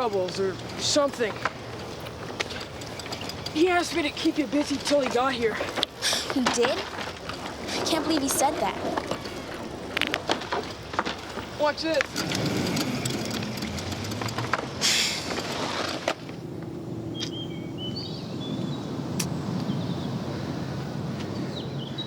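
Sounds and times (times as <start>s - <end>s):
kick scooter rattling: 0.0s - 16.7s
birds chirping: 0.0s - 22.0s.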